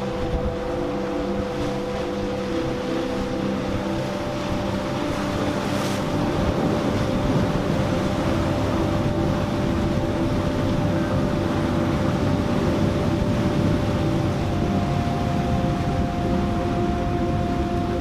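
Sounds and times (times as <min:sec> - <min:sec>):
motorboat engines droning: 0:00.0 - 0:18.0
surf: 0:00.0 - 0:18.0
wind: 0:00.0 - 0:18.0.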